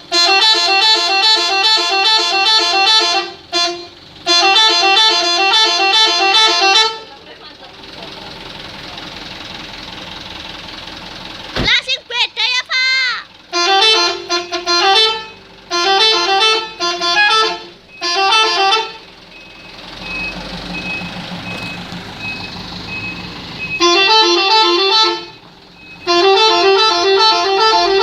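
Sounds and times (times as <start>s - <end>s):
bus multi-tone air horn tune: 0.0s - 7.2s, 13.4s - 19.2s, 23.7s - 28.0s
engine and road noise: 0.0s - 28.0s.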